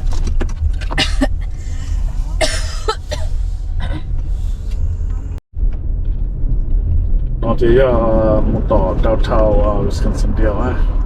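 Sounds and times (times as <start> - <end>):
road rumble inside car: 0.0 - 11.0
person coughing: 1.0 - 1.5, 2.4 - 4.1.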